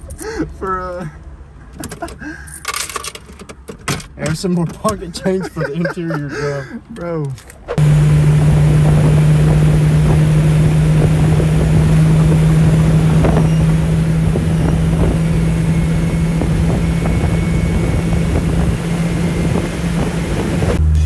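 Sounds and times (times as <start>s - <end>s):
vehicle engine droning: 7.8s - 21.0s.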